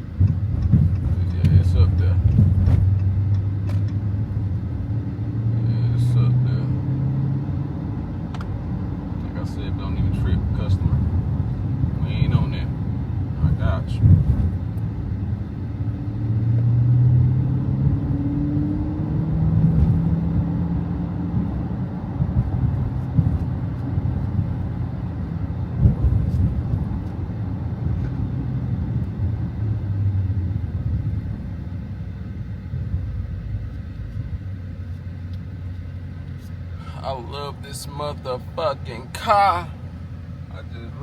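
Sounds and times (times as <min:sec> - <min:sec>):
car engine running: 0:00.0 - 0:41.0
road noise: 0:00.0 - 0:41.0.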